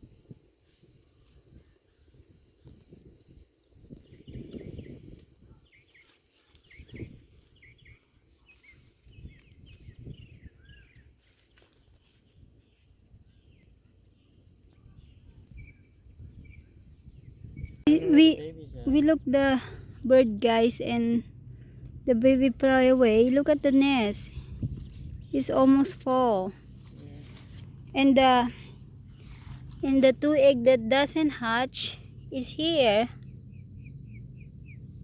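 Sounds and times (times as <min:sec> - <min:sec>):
small birds chirping: 0:00.0 - 0:35.0
low rumbling background noise: 0:13.7 - 0:35.0.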